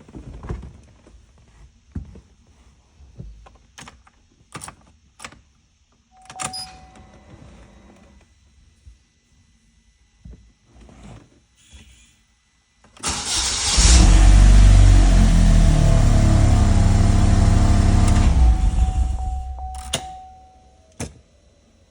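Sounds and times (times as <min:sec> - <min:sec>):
car engine cranking and idling: 0:13.0 - 0:20.5.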